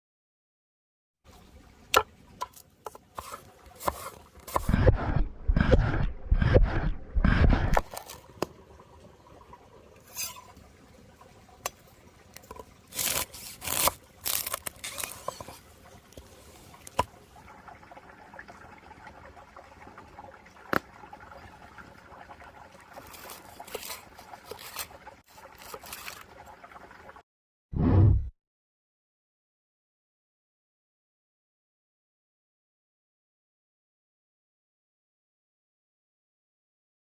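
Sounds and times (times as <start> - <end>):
short scrapes and clicks: 3.2 - 8.2
liquid trickling and pouring: 7.6 - 27.2.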